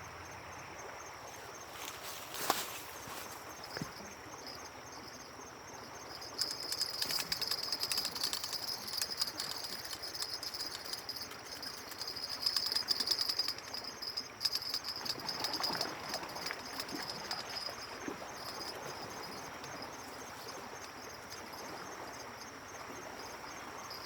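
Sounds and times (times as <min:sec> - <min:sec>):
faint outdoor background noise: 0:00.0 - 0:24.0
insect trilling high pitch: 0:03.6 - 0:22.6.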